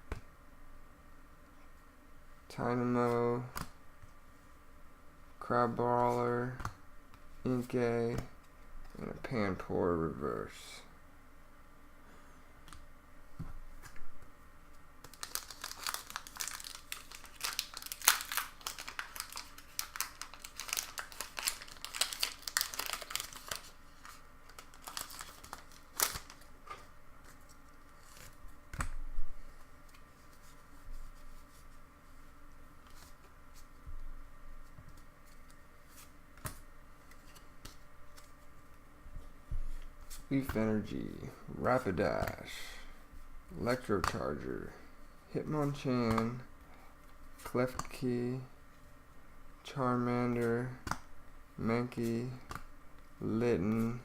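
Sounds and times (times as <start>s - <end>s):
foil wrapper crinkling: 15.0s - 26.5s.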